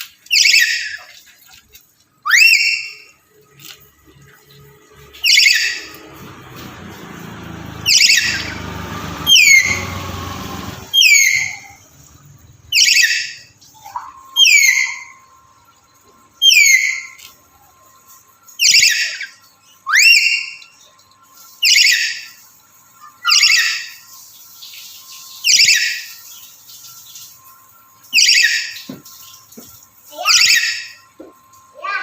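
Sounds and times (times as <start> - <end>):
parrot shrill whistling calls: 0.3 - 1.0, 2.2 - 3.1, 5.2 - 6.1, 7.8 - 8.6, 9.2 - 11.9, 12.7 - 15.2, 16.4 - 17.2, 18.6 - 20.7, 21.6 - 22.4, 23.0 - 24.1, 25.4 - 26.2, 28.1 - 28.9, 30.2 - 31.1.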